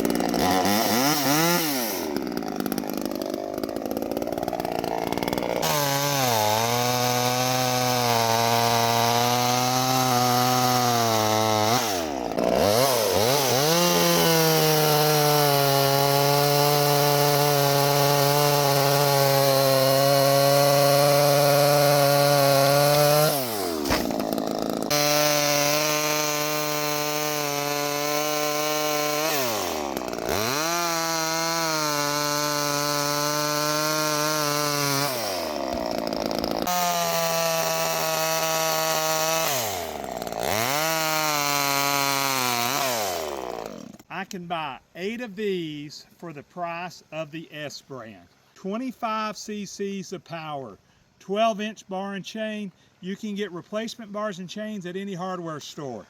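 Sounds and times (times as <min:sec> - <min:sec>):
chainsaw cutting wood: 0:00.0 - 0:44.4.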